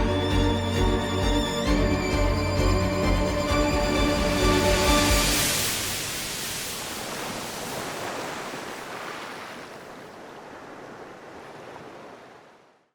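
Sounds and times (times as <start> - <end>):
even rushing noise: 2.8 - 8.7.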